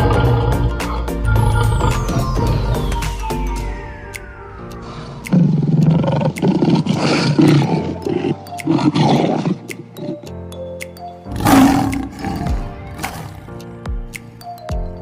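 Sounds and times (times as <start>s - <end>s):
big cat roaring: 0.0s - 2.9s, 5.3s - 10.2s, 11.3s - 13.5s
background music: 0.0s - 15.0s.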